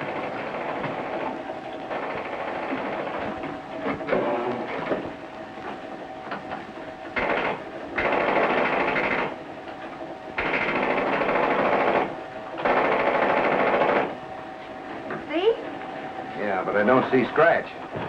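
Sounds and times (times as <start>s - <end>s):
arcade machine gun rattle: 7.2s - 9.3s, 10.4s - 14.1s.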